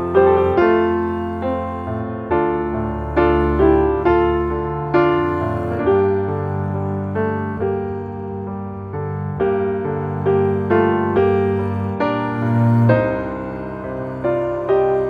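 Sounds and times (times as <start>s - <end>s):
piano notes: 0.0s - 15.0s.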